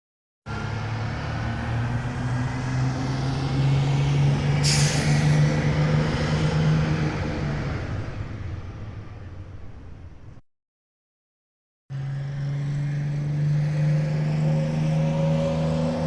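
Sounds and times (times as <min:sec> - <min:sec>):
bus engine humming: 0:00.5 - 0:10.4
air brake hiss: 0:04.6 - 0:05.4.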